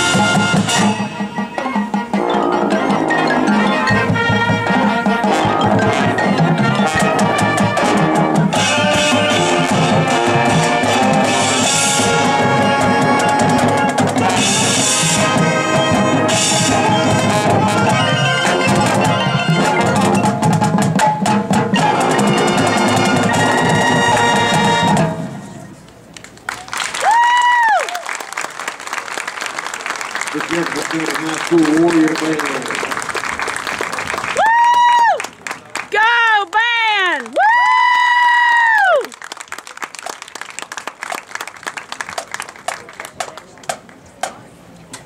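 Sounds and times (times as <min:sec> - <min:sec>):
marching band playing: 0:00.0 - 0:26.1, 0:28.4 - 0:34.7.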